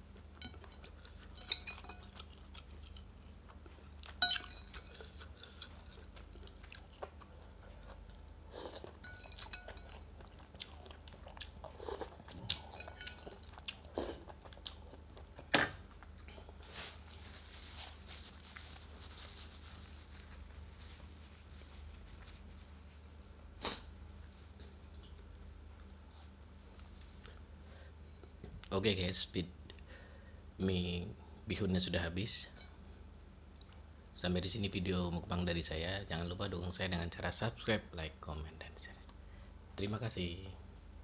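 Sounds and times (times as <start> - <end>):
person chewing: 0.1 - 22.7.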